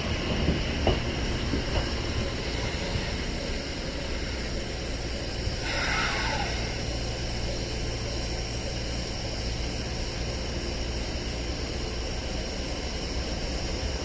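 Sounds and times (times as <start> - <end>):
even hiss: 2.4 - 7.9.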